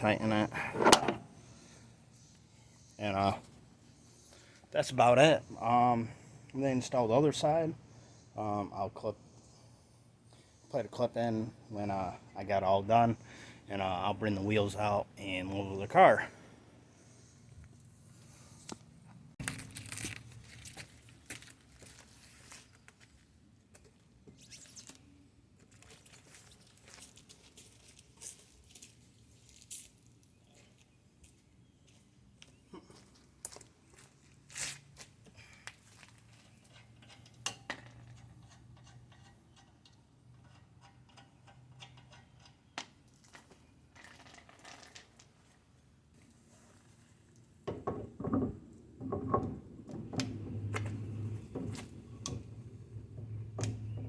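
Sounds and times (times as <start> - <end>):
metal tools clinking and knocking: 36.4 - 42.6.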